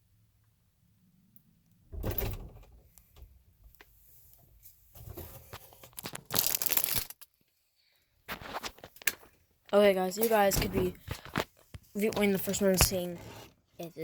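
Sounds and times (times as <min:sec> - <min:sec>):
phone rustling and scraping: 0:08.3 - 0:09.1, 0:10.3 - 0:13.8.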